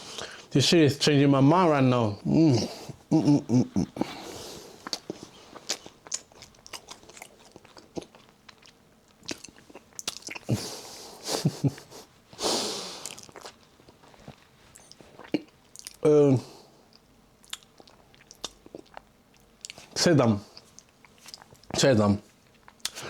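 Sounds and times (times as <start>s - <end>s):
person chewing crunchy snack: 2.6s - 10.7s, 13.0s - 16.0s, 17.4s - 21.7s
breathy hiss: 10.5s - 13.2s.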